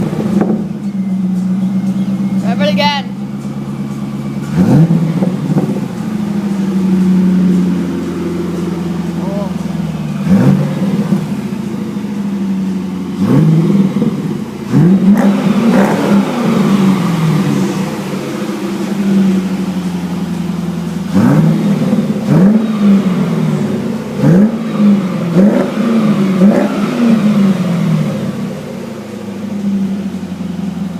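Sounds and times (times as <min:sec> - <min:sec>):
car engine revving: 0:00.0 - 0:30.9.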